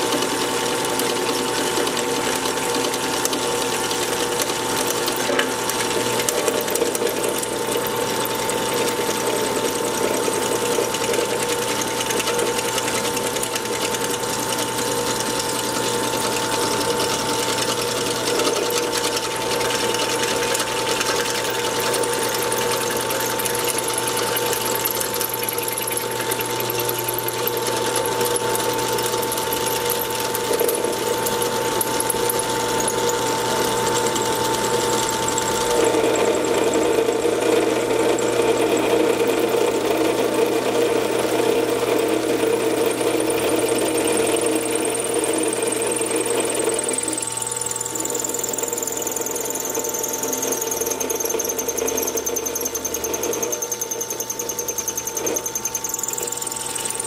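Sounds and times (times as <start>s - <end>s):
drill press whine: 0.0s - 57.0s.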